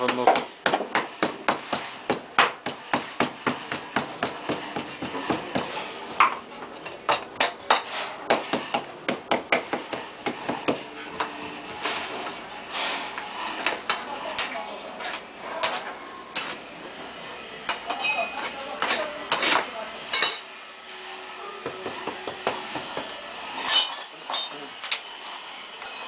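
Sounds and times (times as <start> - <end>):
hand hammer strikes: 0.0 - 6.4, 7.4 - 11.3, 21.6 - 23.1.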